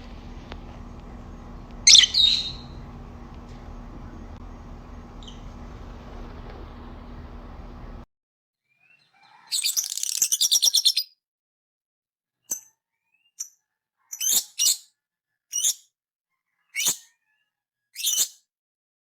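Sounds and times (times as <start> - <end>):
parrot chirping: 0.0 - 6.4
parrot short high calls: 1.8 - 2.8.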